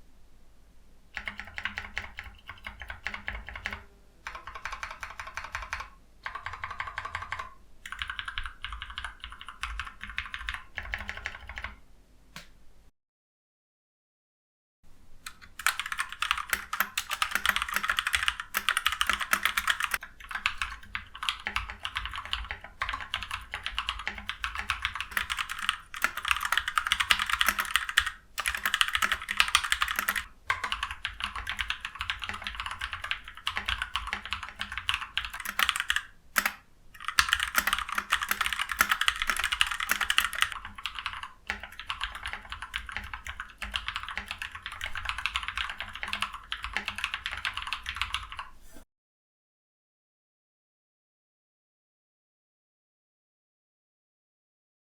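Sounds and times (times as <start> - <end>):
fast typing on mechanical keyboard: 1.2 - 11.8, 15.3 - 48.5.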